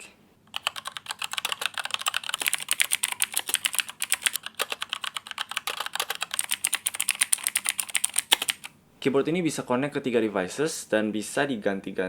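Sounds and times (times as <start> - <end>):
fast mechanical keyboard typing: 0.5 - 8.7.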